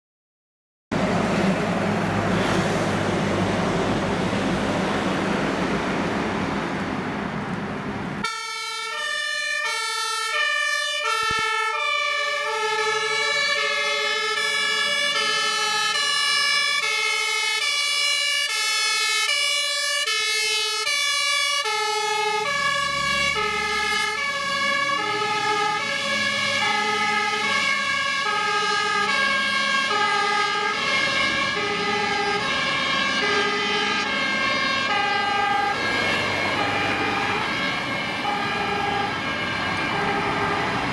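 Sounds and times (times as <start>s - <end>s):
rushing traffic noise: 0.9s - 40.9s
two-tone fire engine sirens: 8.2s - 40.9s.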